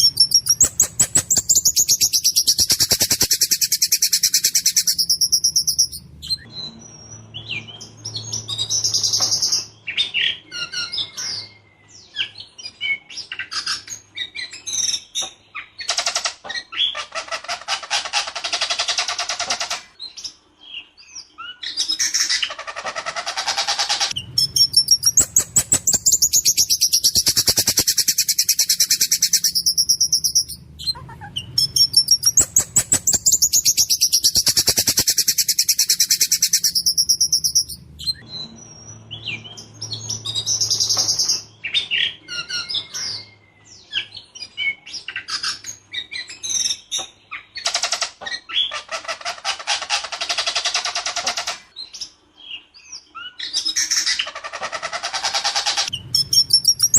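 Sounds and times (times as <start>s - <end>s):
thrush singing rattling trills: 0.0s - 6.5s, 23.7s - 43.3s, 55.8s - 56.9s.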